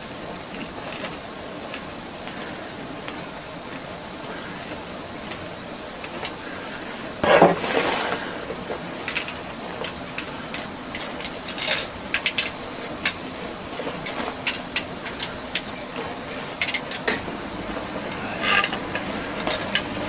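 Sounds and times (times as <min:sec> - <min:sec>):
metal scraping: 0:07.2 - 0:09.4.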